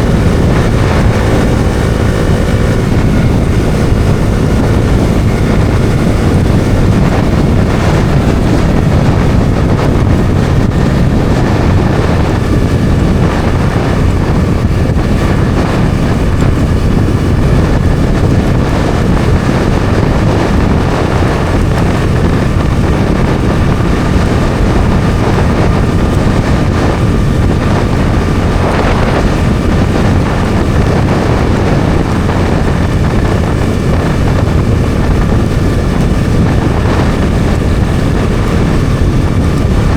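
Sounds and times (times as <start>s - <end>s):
motorcycle engine running: 0.0s - 39.9s
wind rushing over microphone: 0.0s - 39.9s.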